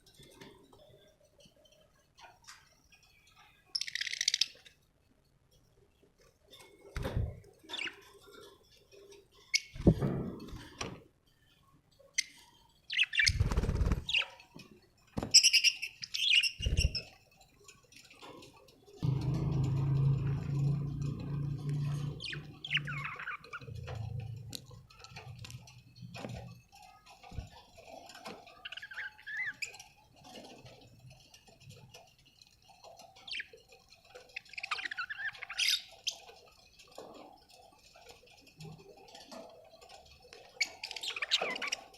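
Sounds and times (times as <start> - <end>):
knocks and rustles: 6.5 - 9.2, 9.8 - 11.3
low steady hum: 19.0 - 23.1
budgerigars chirping: 22.0 - 23.7.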